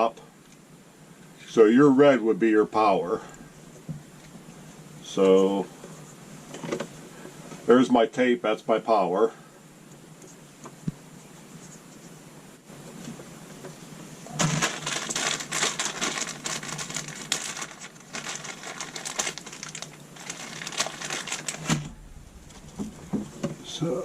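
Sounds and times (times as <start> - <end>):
electrical tape crackling off roll: 14.2 - 24.0.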